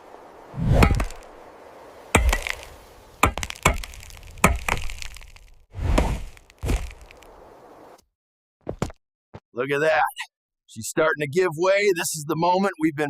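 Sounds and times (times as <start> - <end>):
axe chopping wood: 0.7 - 1.2, 2.2 - 7.2.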